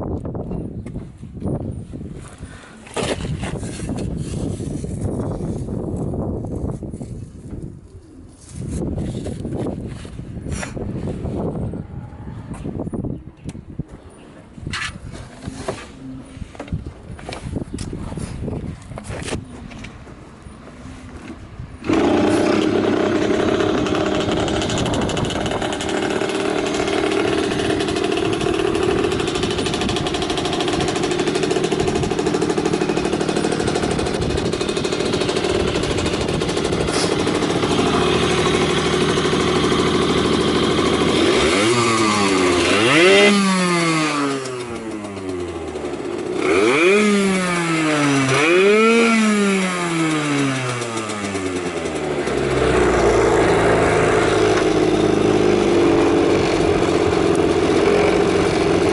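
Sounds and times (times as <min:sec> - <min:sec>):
two-stroke motorcycle engine revving: 0:21.8 - 0:58.9.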